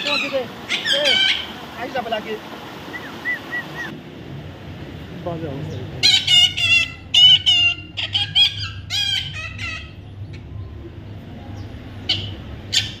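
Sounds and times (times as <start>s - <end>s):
bird squawking: 0.0s - 1.6s, 2.9s - 3.9s, 6.0s - 10.0s, 12.0s - 13.0s.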